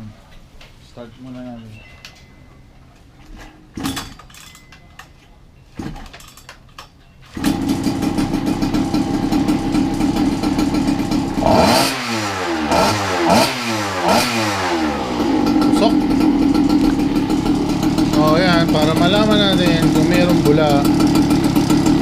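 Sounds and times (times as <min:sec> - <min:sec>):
two-stroke engine starting and running: 0:07.3 - 0:22.0.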